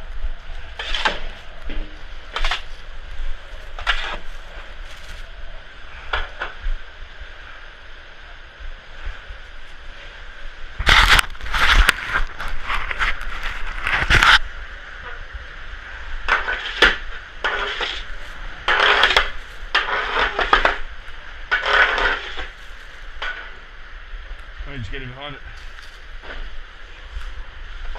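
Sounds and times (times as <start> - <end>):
blizzard wind rumble: 0.0 - 27.9
shovel scraping snow: 0.7 - 5.3, 16.3 - 20.9, 21.5 - 23.5.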